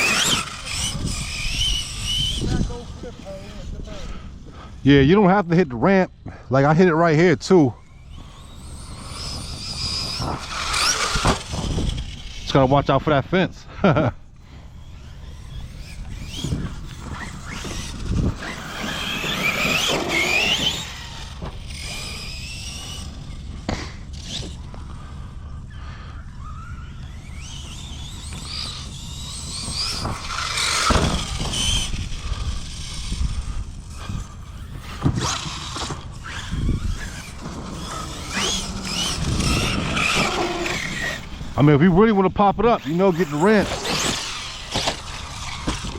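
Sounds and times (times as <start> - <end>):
toy trucks thumping on ground: 0.0 - 3.0, 8.0 - 12.5, 14.8 - 25.0, 26.5 - 41.6, 43.2 - 45.9
electric motors whining: 0.0 - 45.9.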